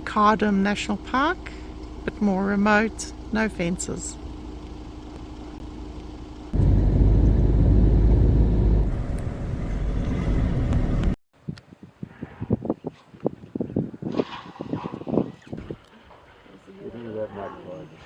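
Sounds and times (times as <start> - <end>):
off-road vehicle rumble: 0.0 - 11.2.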